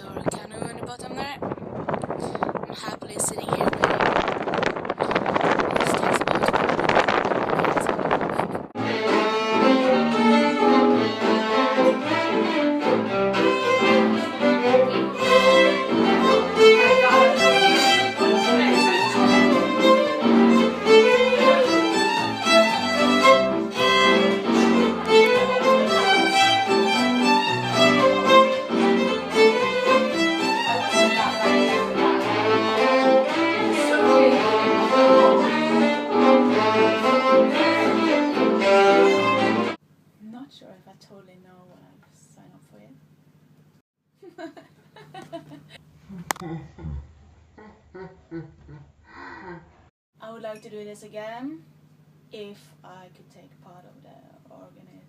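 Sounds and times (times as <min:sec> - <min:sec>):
lively fiddle and strings music: 0:08.8 - 0:39.8.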